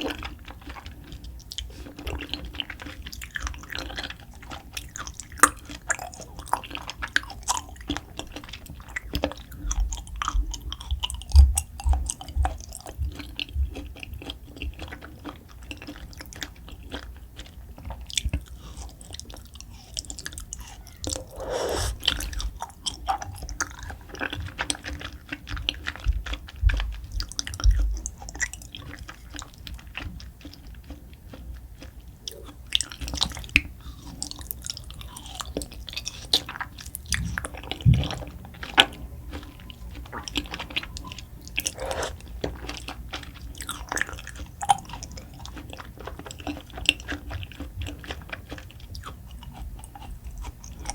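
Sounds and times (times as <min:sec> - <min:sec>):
mouth clicks and smacks chewing: 0:00.0 - 0:50.9.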